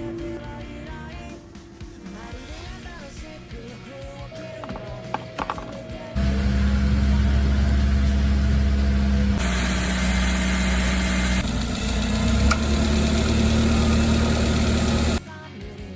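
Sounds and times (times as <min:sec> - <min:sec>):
van engine idling: 0:05.0 - 0:15.2.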